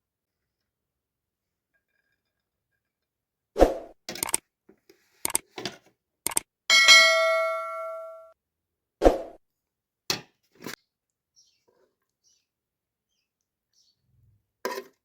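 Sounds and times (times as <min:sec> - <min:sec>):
metal kitchenware clinking: 0:06.7 - 0:08.3
metal vessel ringing: 0:06.7 - 0:08.3.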